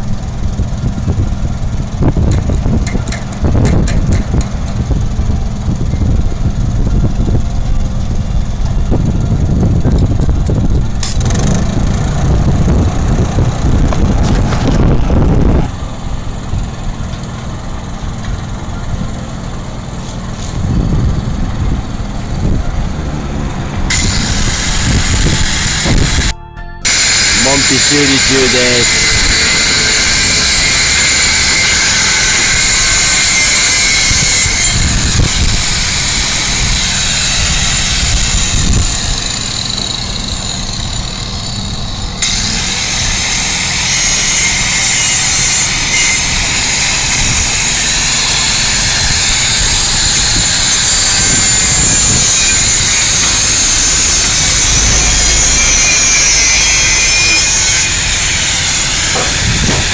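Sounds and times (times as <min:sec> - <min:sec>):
angle grinder grinding steel: 0:02.0 - 0:59.9.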